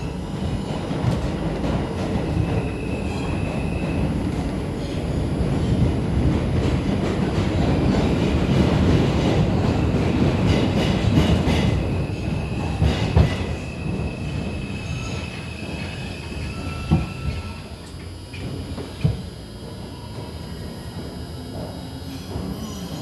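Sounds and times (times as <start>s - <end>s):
high wheel squeal: 2.2s - 4.2s, 11.9s - 18.6s.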